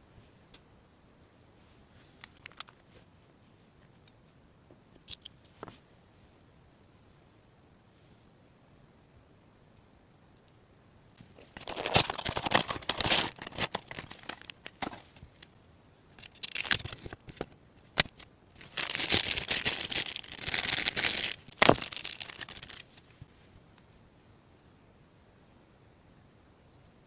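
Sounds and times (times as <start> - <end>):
packaging crinkling and tearing: 11.4 - 15.4, 16.2 - 23.0.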